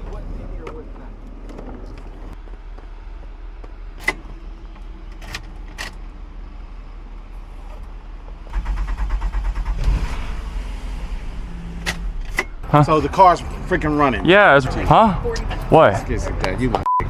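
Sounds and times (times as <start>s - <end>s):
car engine idling: 0.0s - 16.8s
starter cranking engine: 7.4s - 16.3s.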